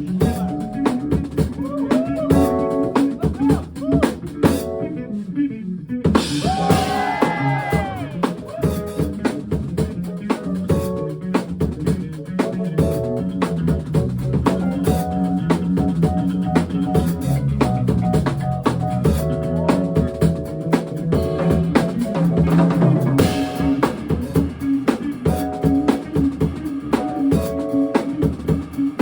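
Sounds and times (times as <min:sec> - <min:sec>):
funk band playing: 0:00.0 - 0:29.0.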